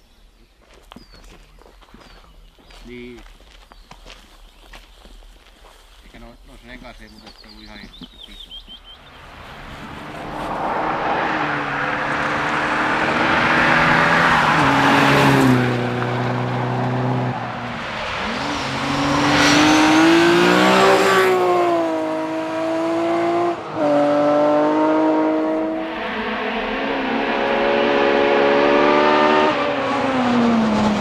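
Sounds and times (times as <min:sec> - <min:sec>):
tyre and road noise: 0:00.8 - 0:31.0
rally car engine at full throttle: 0:09.7 - 0:31.0.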